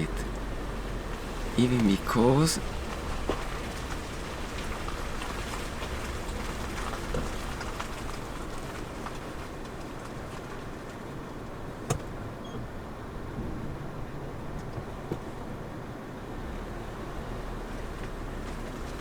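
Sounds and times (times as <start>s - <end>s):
rain on car roof: 0.0s - 15.6s, 17.1s - 19.0s
raindrop taps: 1.1s - 11.0s, 14.6s - 15.4s.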